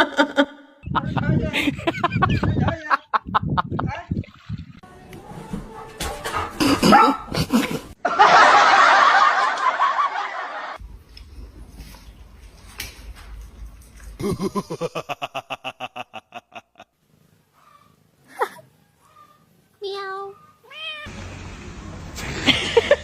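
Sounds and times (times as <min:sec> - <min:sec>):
person laughing: 0:00.0 - 0:03.9, 0:06.6 - 0:08.2, 0:14.2 - 0:16.9, 0:18.3 - 0:18.6, 0:22.3 - 0:23.0.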